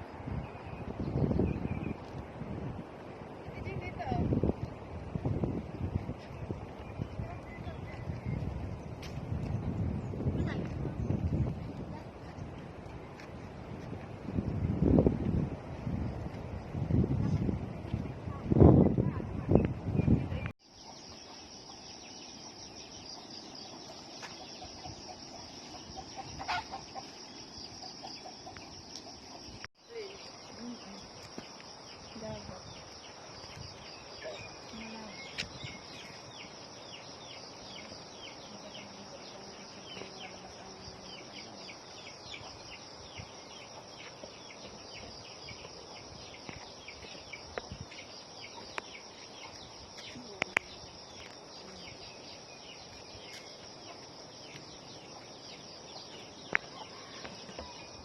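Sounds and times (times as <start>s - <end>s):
chickens clucking: 24.4s - 27.2s.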